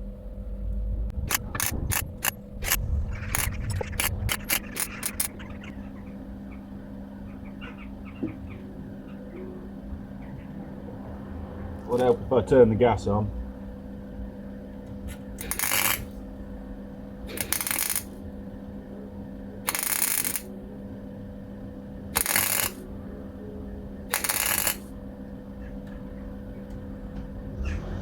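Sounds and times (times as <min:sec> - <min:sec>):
steady electrical hum: 0:00.0 - 0:28.0
welder crackling: 0:01.1 - 0:05.7, 0:15.1 - 0:16.2, 0:17.3 - 0:18.2, 0:19.7 - 0:20.5, 0:22.2 - 0:22.8, 0:24.1 - 0:24.9.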